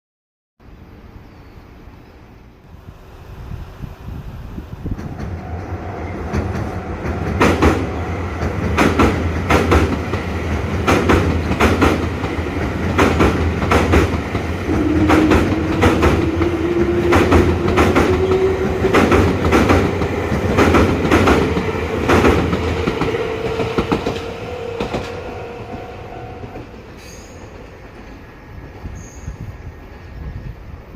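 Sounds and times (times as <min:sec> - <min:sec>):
electric train rumbling: 0:00.6 - 0:30.9
train whine rising: 0:02.8 - 0:30.3
wheels clacking over rail joints: 0:04.9 - 0:28.8.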